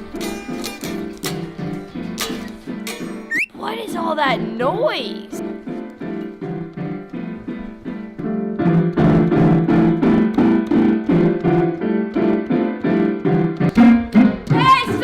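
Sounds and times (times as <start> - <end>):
child banging piano chords: 3.3 - 15.0.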